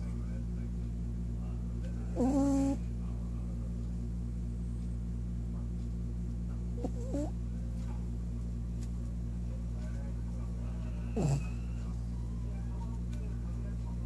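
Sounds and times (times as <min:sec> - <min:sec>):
pet snoring: 0:02.1 - 0:02.8, 0:06.8 - 0:07.4, 0:11.1 - 0:11.8.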